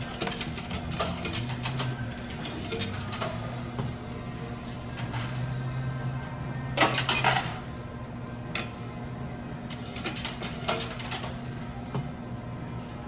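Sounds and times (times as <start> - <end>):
coins clattering: 0.0 - 3.8, 4.9 - 7.7, 9.7 - 11.6
steady low hum: 0.0 - 13.0.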